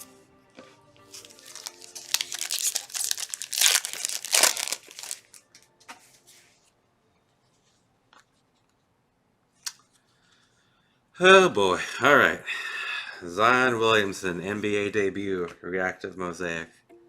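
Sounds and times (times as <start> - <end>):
wrapper tearing and crinkling: 1.1 - 5.5.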